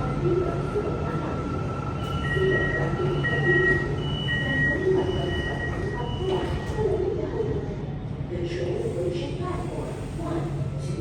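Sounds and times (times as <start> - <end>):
high two-tone warning beep: 2.0 - 6.7.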